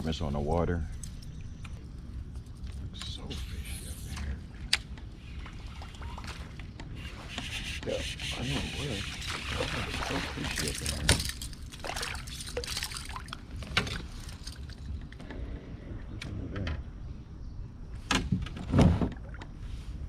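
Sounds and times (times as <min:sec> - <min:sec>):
water lapping around kayak: 0:04.1 - 0:14.3.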